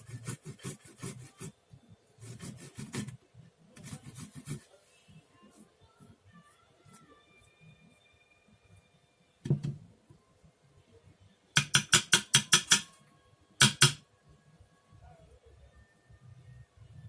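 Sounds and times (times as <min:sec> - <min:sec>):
kitchen utensils knocking: 0:11.6 - 0:12.9, 0:13.6 - 0:14.0.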